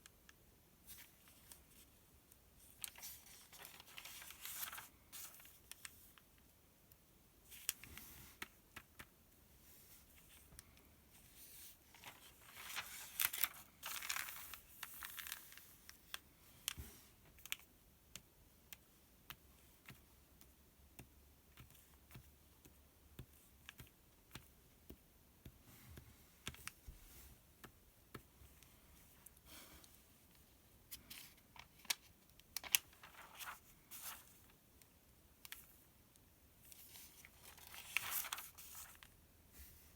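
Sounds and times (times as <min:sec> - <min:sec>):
paper page turning: 0:02.7 - 0:06.0, 0:11.6 - 0:15.8, 0:31.0 - 0:34.5, 0:36.7 - 0:39.1.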